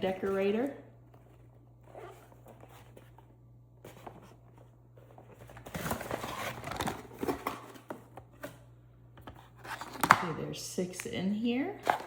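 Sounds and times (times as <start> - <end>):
packaging rustling: 0.0 - 8.2.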